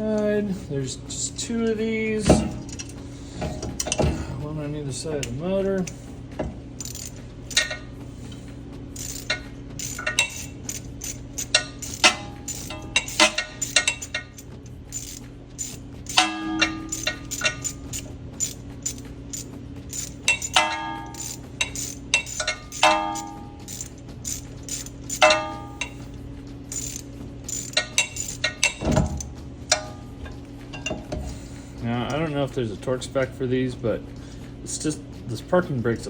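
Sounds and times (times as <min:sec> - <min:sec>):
steady low hum: 0:00.0 - 0:36.0
metal clinks: 0:02.2 - 0:04.5, 0:05.2 - 0:08.3, 0:09.0 - 0:31.6
ratchet clicks: 0:02.3 - 0:31.5.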